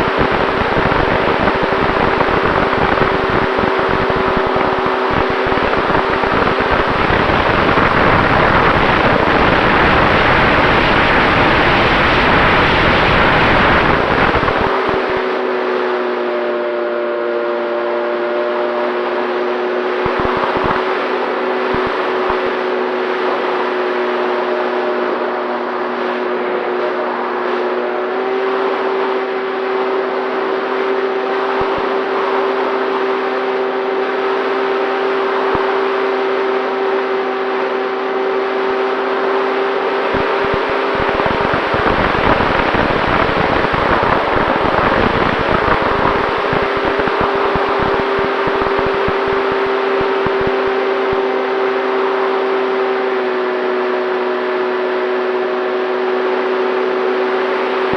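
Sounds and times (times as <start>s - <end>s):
wind rushing and buffeting: 0.0s - 16.2s, 17.9s - 57.9s
electric motor propeller whine: 0.0s - 57.9s.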